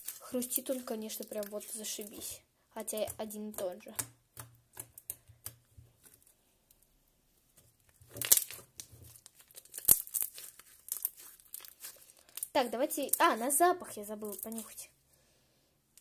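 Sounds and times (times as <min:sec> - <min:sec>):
crunchy slime squeezed by hand: 0:08.1 - 0:12.6.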